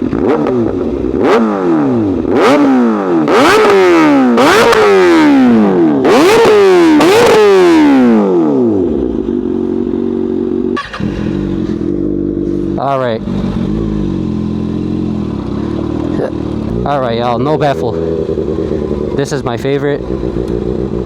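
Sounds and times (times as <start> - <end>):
motorcycle engine revving: 0.0 - 21.0
motorcycle engine idling: 8.0 - 21.0.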